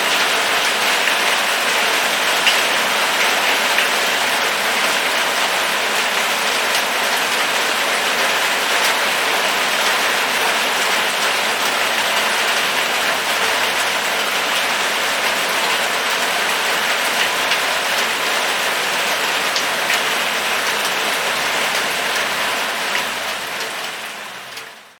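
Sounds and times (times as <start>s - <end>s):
steady rain falling: 0.0s - 24.9s
raindrop ticks: 0.1s - 4.1s, 10.8s - 21.0s.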